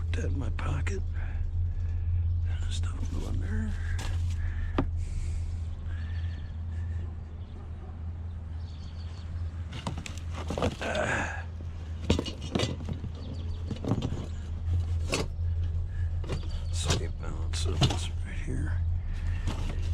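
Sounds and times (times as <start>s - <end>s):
steady low hum: 0.0s - 19.9s
scrap knocking and clattering: 9.7s - 11.0s, 11.8s - 18.2s, 19.2s - 19.9s.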